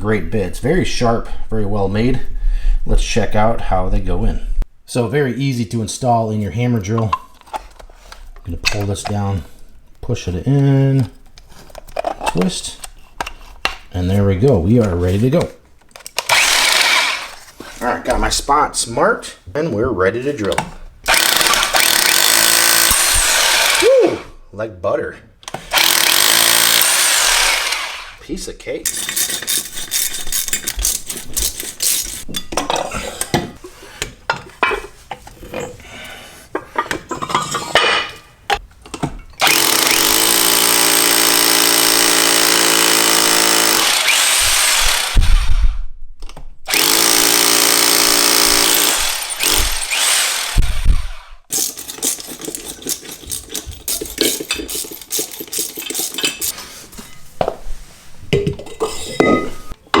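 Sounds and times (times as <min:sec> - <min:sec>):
knocks and clatter of handling: 0:11.0 - 0:13.9, 0:30.4 - 0:35.8, 0:36.5 - 0:39.4, 0:51.5 - 0:57.7, 0:58.3 - 1:00.0
hammer drill boring into concrete: 0:16.2 - 0:17.4, 0:21.1 - 0:24.2, 0:25.7 - 0:28.2, 0:39.4 - 0:45.6, 0:46.7 - 0:53.4.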